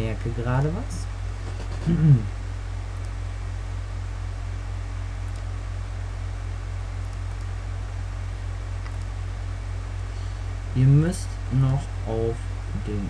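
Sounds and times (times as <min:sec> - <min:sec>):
low hum and hiss: 0:00.0 - 0:13.0
faint clicks: 0:05.2 - 0:05.5, 0:08.8 - 0:09.1.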